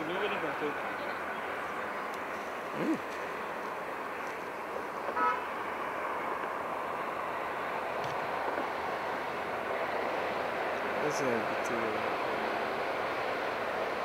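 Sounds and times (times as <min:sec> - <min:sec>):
road traffic hum: 0:00.0 - 0:14.0
vehicle horn toot: 0:05.2 - 0:05.5.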